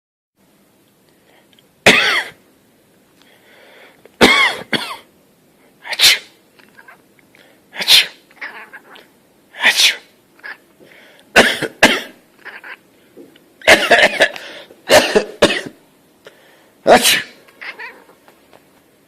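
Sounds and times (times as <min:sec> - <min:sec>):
person sneezing: 0:05.8 - 0:06.4, 0:07.8 - 0:08.2, 0:09.6 - 0:10.1, 0:13.6 - 0:15.8, 0:16.9 - 0:17.4.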